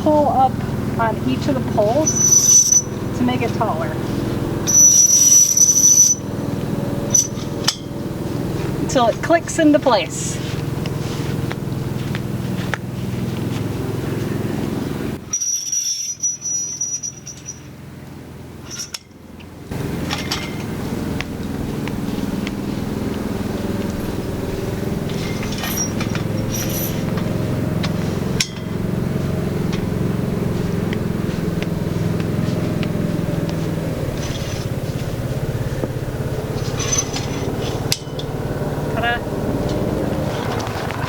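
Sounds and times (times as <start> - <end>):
low engine-like drone: 0.0 - 41.0
metal frame clicks and clinks: 15.3 - 17.7.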